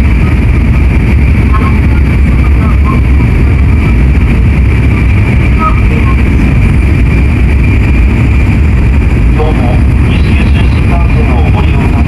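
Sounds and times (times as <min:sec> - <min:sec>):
high hum: 0:00.0 - 0:12.0
train rumbling: 0:00.0 - 0:12.0.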